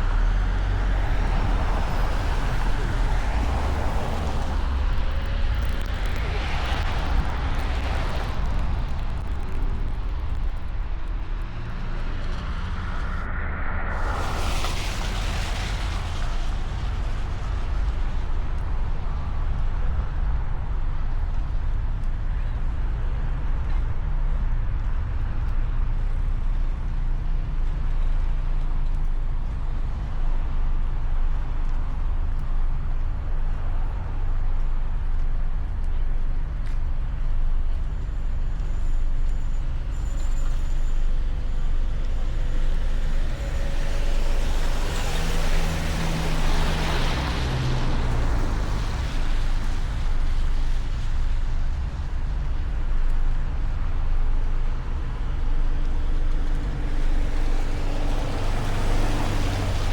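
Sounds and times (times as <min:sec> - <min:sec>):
car engine and tyres rumbling: 0:00.0 - 0:59.9
rushing hiss: 0:13.9 - 0:18.0.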